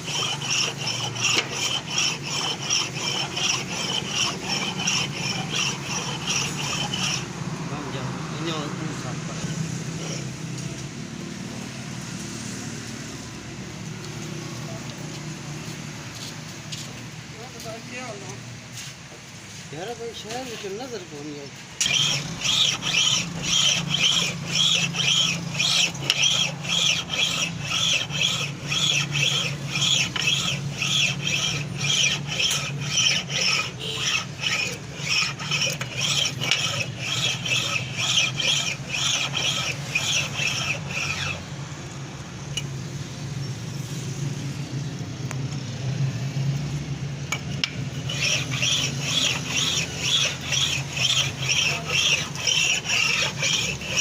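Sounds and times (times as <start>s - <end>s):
cutter squealing on metal: 0.0s - 7.3s, 21.8s - 41.4s, 47.6s - 54.0s
motor hum: 0.0s - 7.9s, 21.8s - 41.6s, 47.6s - 54.0s.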